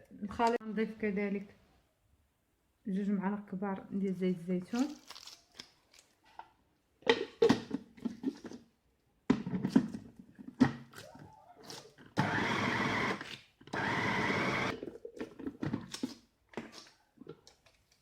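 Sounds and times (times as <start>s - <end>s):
electric blender grinding: 12.2s - 14.7s.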